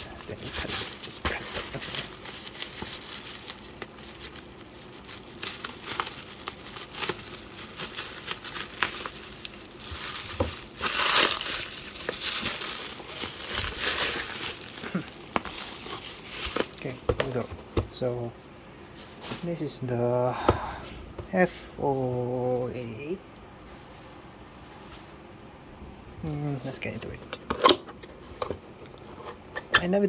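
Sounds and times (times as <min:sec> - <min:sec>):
packaging ripping: 0:00.0 - 0:17.4
plastic packaging crinkling: 0:00.0 - 0:18.0.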